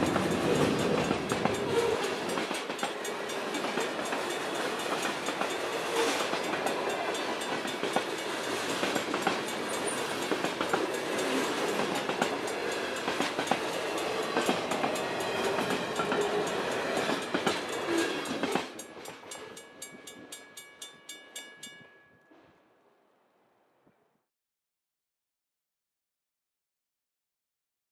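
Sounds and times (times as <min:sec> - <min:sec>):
freight train wheels clattering: 0:00.0 - 0:21.9
wheels clicking over rail joints: 0:00.0 - 0:22.2
railroad crossing bell ringing: 0:00.0 - 0:22.4.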